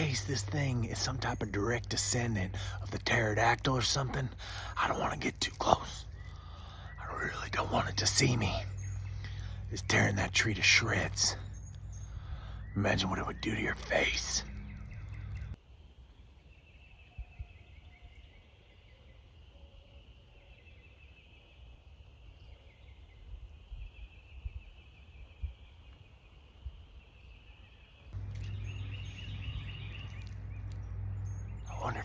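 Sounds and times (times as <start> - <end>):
high bird calls: 0.0 - 15.6, 28.2 - 32.0
steady low hum: 0.0 - 15.6, 28.2 - 32.0.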